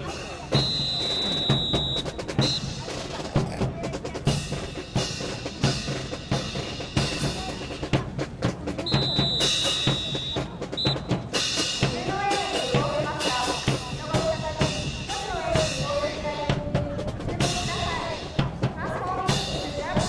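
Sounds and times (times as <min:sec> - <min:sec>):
marching snare and bass drums: 0:00.0 - 0:20.0
high whistle blasts: 0:00.5 - 0:02.8, 0:08.9 - 0:11.2.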